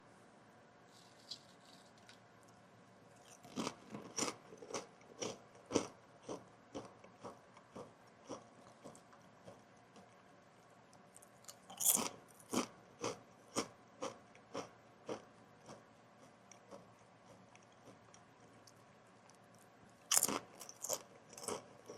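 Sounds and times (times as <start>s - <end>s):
potato chips bitten: 3.2s - 7.4s, 11.2s - 16.7s, 20.1s - 21.6s
crunchy chewing: 3.2s - 10.2s, 11.1s - 21.9s.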